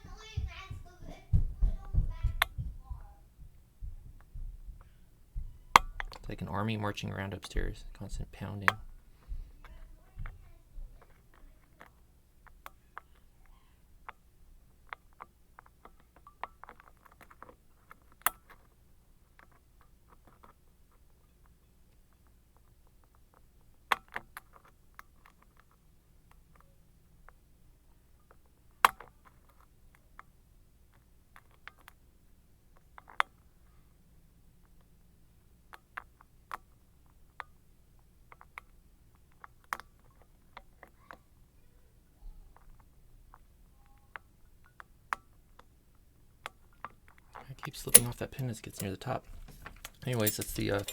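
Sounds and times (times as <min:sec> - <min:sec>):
lock pick clicking in padlock: 0:47.7 - 0:50.9.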